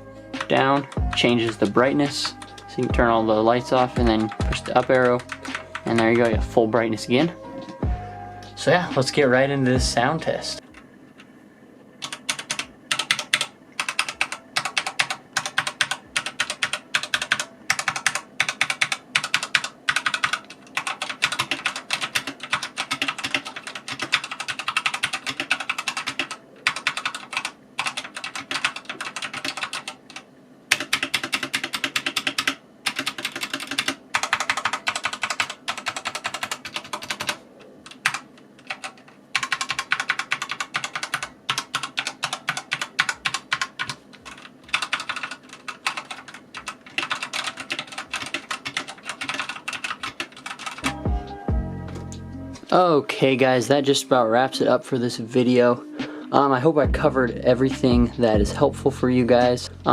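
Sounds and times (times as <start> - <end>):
mechanical keyboard typing: 0.4 - 6.4, 12.0 - 51.0.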